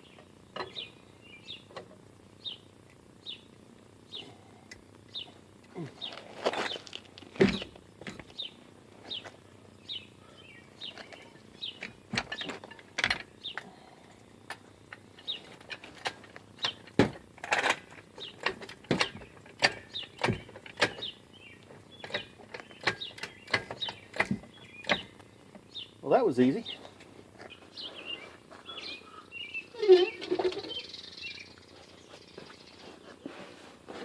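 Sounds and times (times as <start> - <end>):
small birds chirping: 0.0 - 16.9, 18.1 - 33.4.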